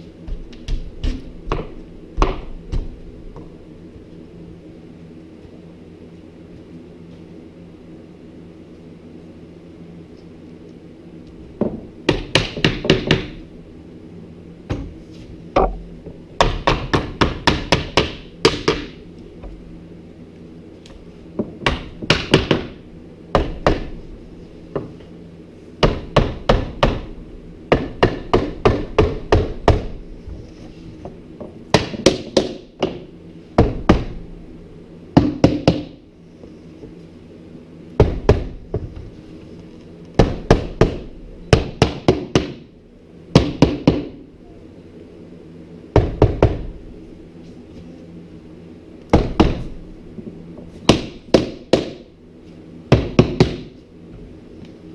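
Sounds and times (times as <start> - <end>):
hammer striking wood: 11.6 - 13.4, 16.4 - 19.0, 21.4 - 23.9, 25.8 - 27.1, 27.7 - 30.0, 31.7 - 33.0, 35.2 - 36.0, 40.2 - 42.6, 43.4 - 44.2, 50.9 - 52.1, 52.9 - 53.8.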